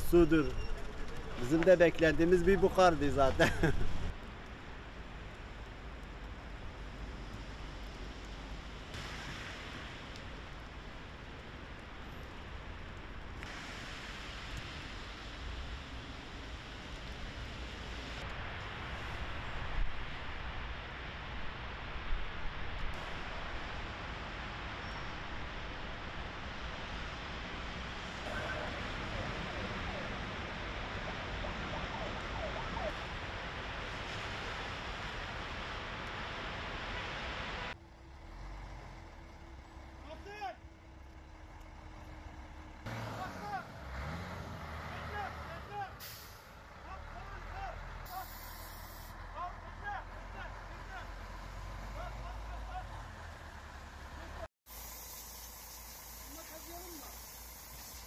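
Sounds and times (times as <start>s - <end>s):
wind: 0.0s - 58.0s
vehicles hissing past: 42.3s - 49.3s, 50.5s - 58.0s.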